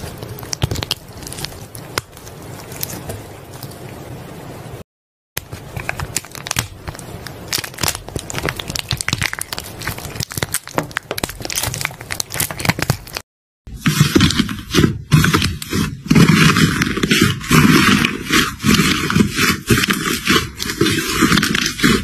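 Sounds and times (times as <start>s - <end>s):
slime crackling and popping: 0.0s - 3.7s, 5.4s - 13.2s, 13.8s - 22.0s.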